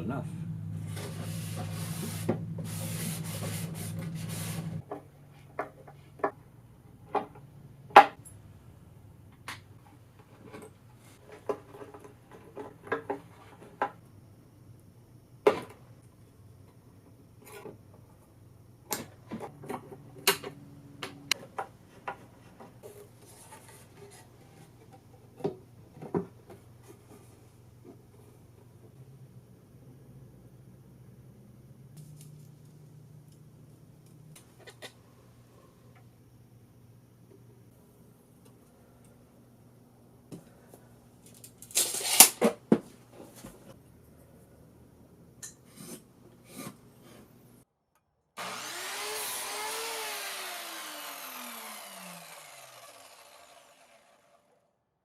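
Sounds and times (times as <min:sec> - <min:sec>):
electric motor humming: 0:48.4 - 0:54.5.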